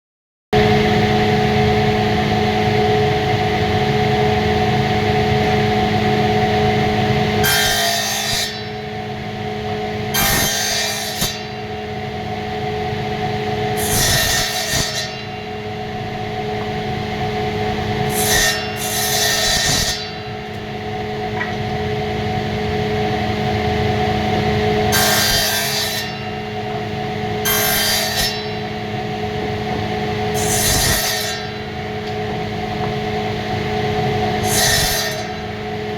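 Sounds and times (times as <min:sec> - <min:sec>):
woodworking machine motor hum: 0:08.2 - 0:35.9
harsh rasping wood cutting: 0:13.7 - 0:20.2.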